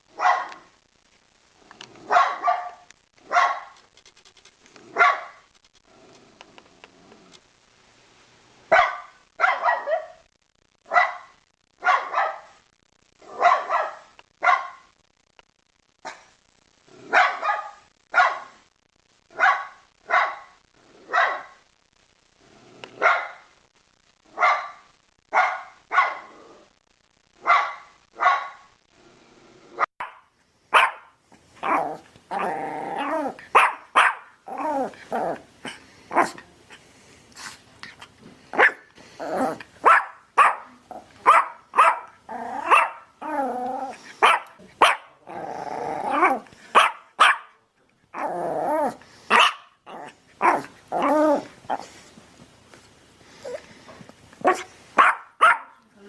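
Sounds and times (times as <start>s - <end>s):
dog barking: 0.1s - 0.7s, 2.0s - 3.8s, 4.9s - 5.4s, 8.7s - 10.3s, 10.9s - 12.6s, 13.2s - 14.9s, 17.1s - 18.6s, 19.3s - 21.6s, 23.0s - 23.5s, 24.3s - 26.4s, 27.4s - 28.7s, 30.0s - 32.0s, 33.0s - 34.4s, 35.6s - 36.4s, 38.6s - 38.9s, 39.5s - 43.1s, 44.2s - 45.2s, 46.1s - 47.6s, 49.3s - 51.1s, 54.4s - 55.8s.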